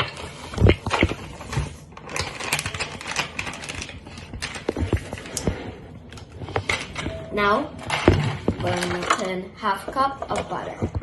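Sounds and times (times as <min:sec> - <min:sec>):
packet rustling: 0:00.0 - 0:07.2.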